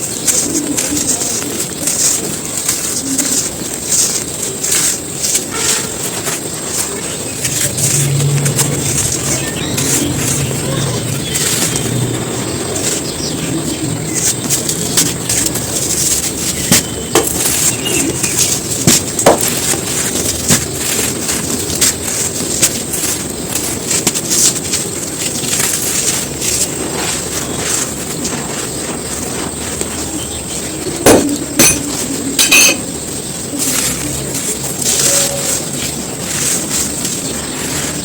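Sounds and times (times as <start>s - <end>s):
sand clumps crumbling: 0.0s - 38.0s.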